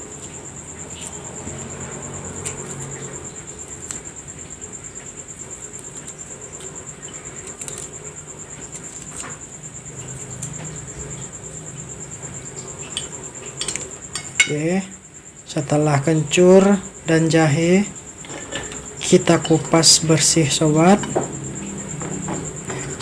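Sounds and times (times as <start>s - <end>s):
high-pitched insect trill: 0.0s - 23.0s
knife peeling ginger root: 3.7s - 4.1s, 5.6s - 10.6s.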